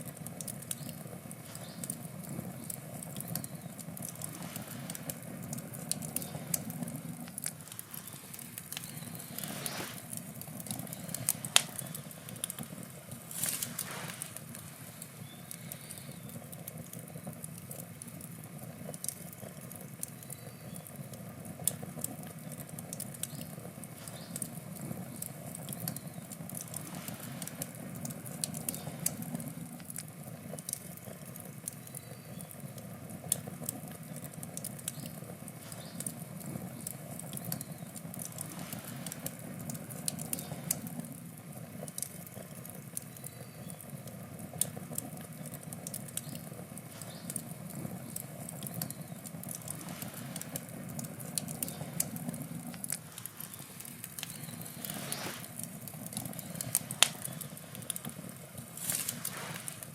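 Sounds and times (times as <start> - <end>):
campfire crackling: 0.0 - 59.9
low rumble of flames: 0.0 - 59.9
sharp pops of burning wood: 0.0 - 59.9.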